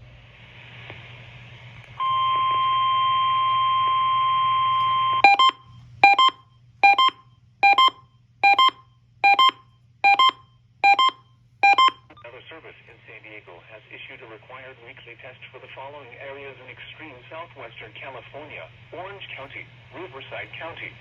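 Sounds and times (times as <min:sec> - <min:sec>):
electronic double beeps: 0:05.2 - 0:12.1.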